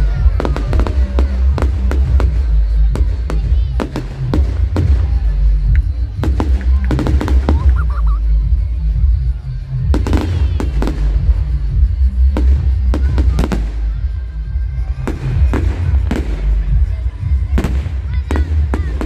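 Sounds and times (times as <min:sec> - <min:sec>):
fireworks banging and cracking: 0:00.0 - 0:19.0
steady music: 0:00.0 - 0:19.0.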